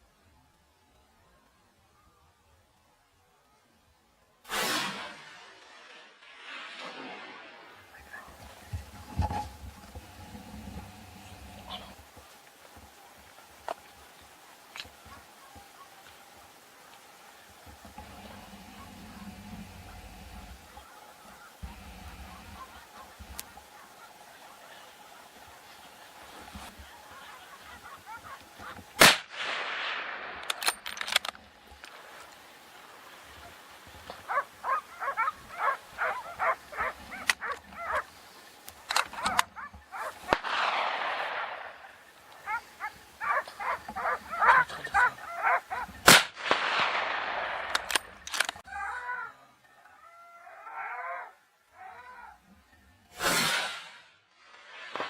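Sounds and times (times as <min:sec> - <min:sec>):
gunshots with rolling echo: 0:04.5 - 0:08.7, 0:28.6 - 0:31.3, 0:40.1 - 0:42.6, 0:43.2 - 0:48.3
dogs barking: 0:14.8 - 0:17.0, 0:17.6 - 0:29.0, 0:33.2 - 0:38.2, 0:38.9 - 0:40.4, 0:42.4 - 0:46.1.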